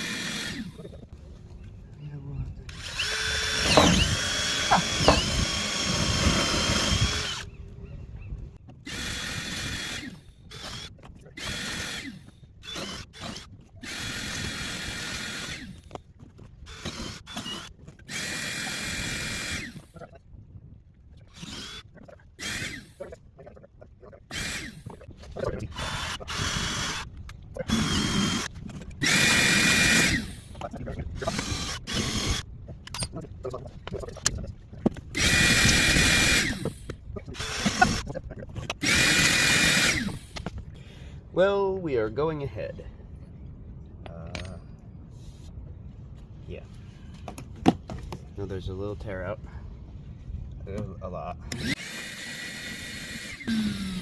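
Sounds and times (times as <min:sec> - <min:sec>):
electric drill boring wood: 0:00.0 - 0:00.8, 0:02.7 - 0:07.5, 0:08.8 - 0:15.9, 0:16.7 - 0:19.9, 0:21.3 - 0:21.8, 0:22.4 - 0:23.0, 0:24.3 - 0:25.0, 0:25.7 - 0:27.1, 0:27.7 - 0:30.6, 0:31.2 - 0:32.4, 0:35.2 - 0:38.1, 0:38.7 - 0:40.4, 0:51.5 - 0:54.0.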